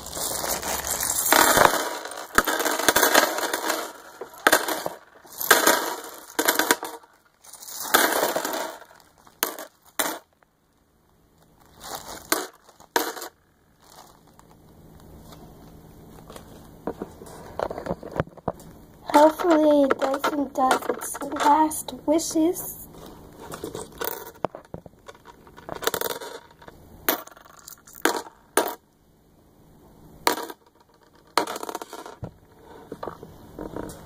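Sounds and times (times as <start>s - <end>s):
seashells clattering: 0.0s - 10.3s, 11.6s - 14.6s, 19.1s - 21.8s.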